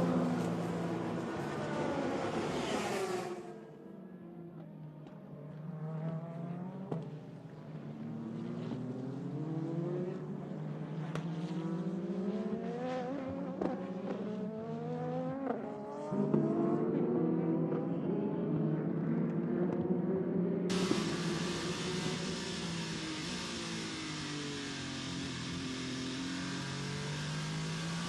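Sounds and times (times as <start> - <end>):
racing engine accelerating: 0.0 - 28.0
steady low drone: 20.7 - 28.0.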